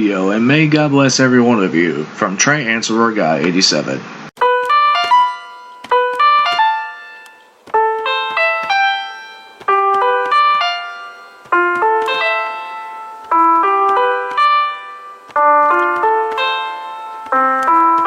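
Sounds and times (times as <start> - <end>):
bright struck keyboard notes: 4.4 - 18.0.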